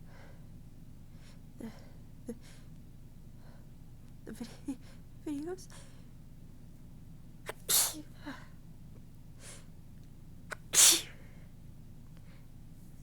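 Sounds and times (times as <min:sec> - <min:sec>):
woman sneezing: 0:07.5 - 0:08.1, 0:10.5 - 0:11.1.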